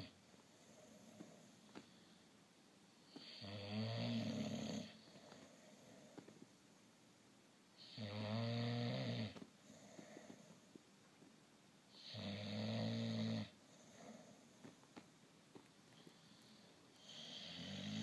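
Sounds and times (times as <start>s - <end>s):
baby snoring: 3.2s - 5.1s, 17.0s - 18.0s.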